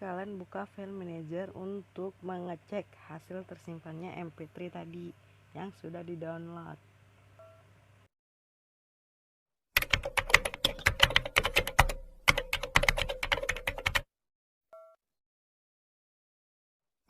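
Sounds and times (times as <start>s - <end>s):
keyboard key clicks: 9.8s - 14.0s.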